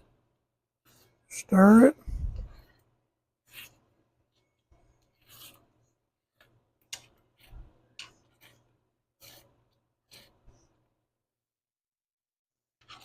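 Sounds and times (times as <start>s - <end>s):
spoon scraping beans in skillet: 2.6s - 10.9s, 12.8s - 13.0s.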